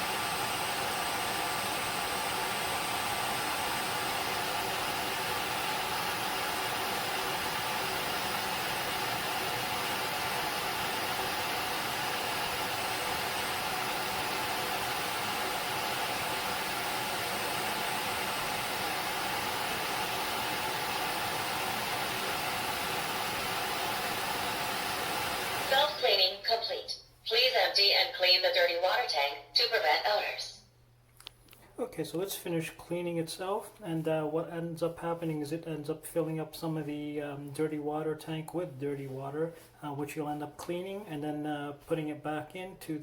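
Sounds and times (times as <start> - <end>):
floor cleaner motor blowing air: 0.0 - 26.2.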